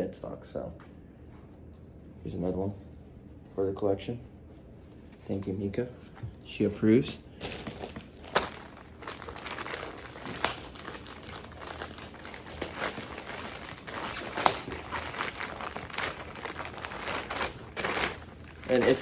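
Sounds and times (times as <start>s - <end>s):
packaging crinkling and rustling: 7.0s - 19.0s.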